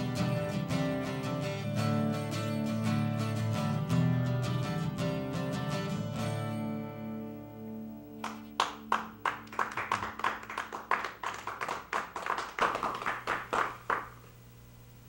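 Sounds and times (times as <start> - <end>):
acoustic guitar chord ringing: 0.0 - 10.8
people clapping: 8.2 - 14.3.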